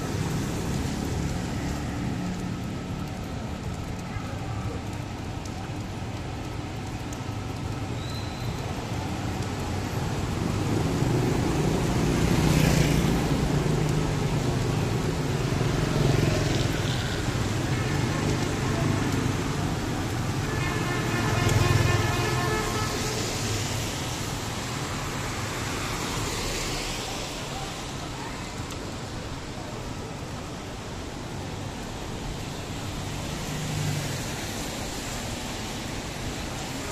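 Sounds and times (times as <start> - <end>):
vehicles passing: 0.0 - 36.9
vehicle horn: 20.5 - 23.2.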